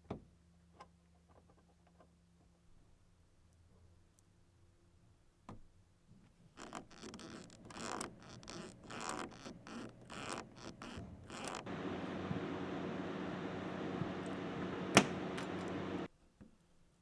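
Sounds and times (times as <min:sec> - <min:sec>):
single click: 0:14.9 - 0:15.7.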